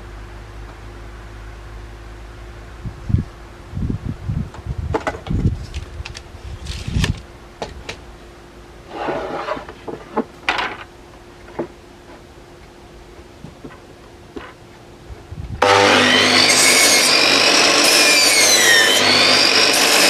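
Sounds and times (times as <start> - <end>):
short scrapes: 5.5 - 7.2, 8.9 - 10.2.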